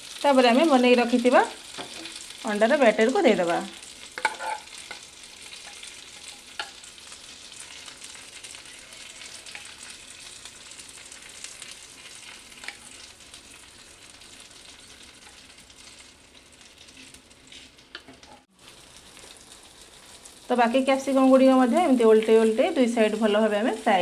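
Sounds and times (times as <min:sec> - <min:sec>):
food sizzling in a pan: 0:00.0 - 0:24.0.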